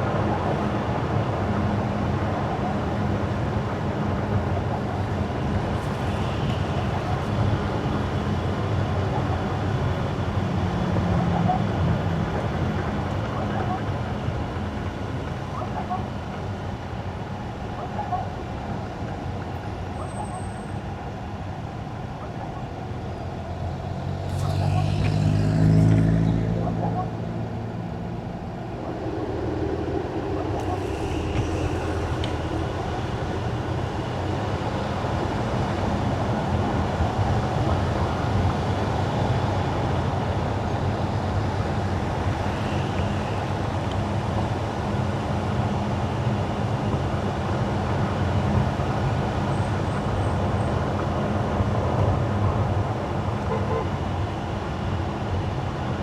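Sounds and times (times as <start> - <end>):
low road rumble: 0.0 - 56.0
tyres hissing on wet road: 4.8 - 10.7, 23.4 - 26.1, 29.0 - 50.4.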